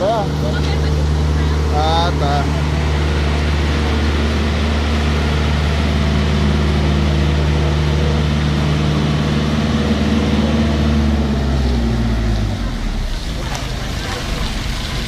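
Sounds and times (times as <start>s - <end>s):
steady low hum: 0.0s - 15.0s
heavy rain and running water: 12.4s - 15.0s.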